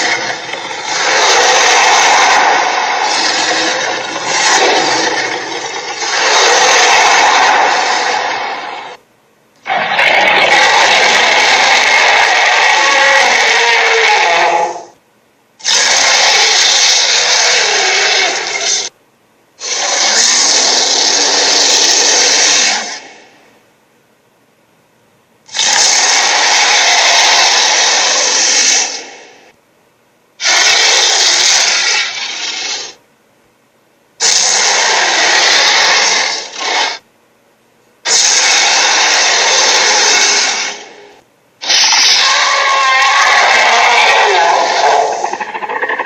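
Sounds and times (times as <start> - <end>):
harsh noisy sound effects: 0.0 - 9.0, 9.6 - 14.6, 38.0 - 46.0.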